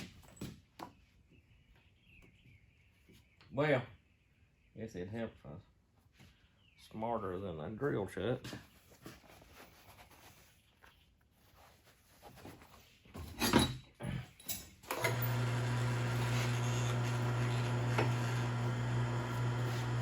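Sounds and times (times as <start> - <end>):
electric drill drilling: 14.9 - 20.0.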